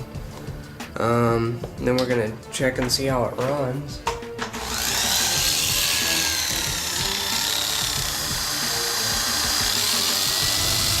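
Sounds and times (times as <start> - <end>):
electric hair clipper running: 4.5 - 11.0.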